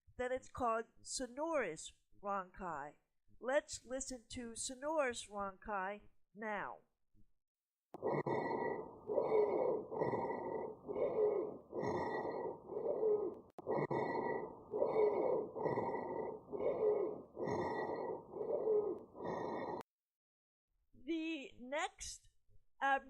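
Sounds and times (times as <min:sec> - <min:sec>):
low snoring breath sounds: 0:08.0 - 0:19.8.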